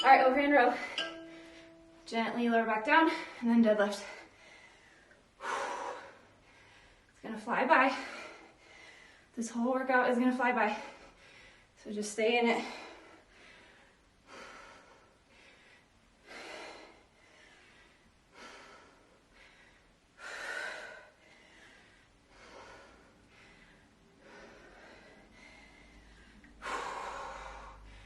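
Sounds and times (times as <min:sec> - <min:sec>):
woman breathing hard: 0:12.6 - 0:28.0.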